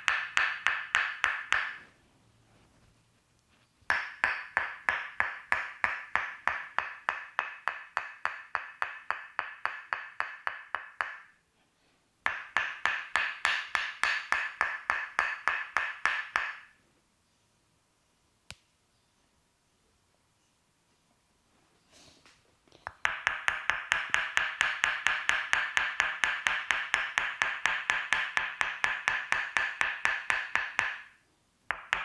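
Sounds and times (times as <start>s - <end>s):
wooden mallet tapping wooden wedge: 0.0s - 2.0s, 3.9s - 11.4s, 12.2s - 16.8s, 22.8s - 32.0s.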